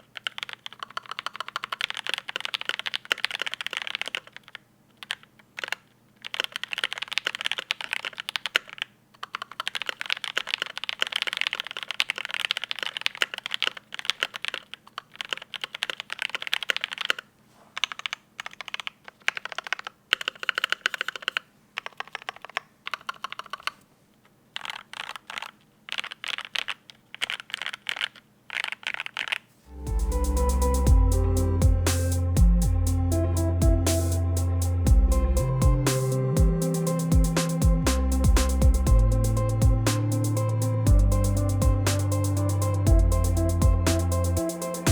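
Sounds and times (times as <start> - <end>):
mechanical keyboard typing: 0.0 - 23.8, 24.5 - 29.4.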